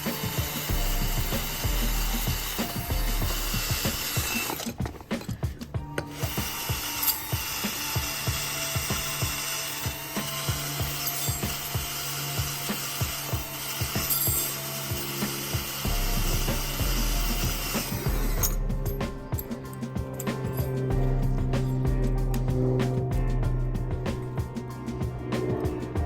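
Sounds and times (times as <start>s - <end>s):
ratchet wrench clicking: 0.0s - 20.7s.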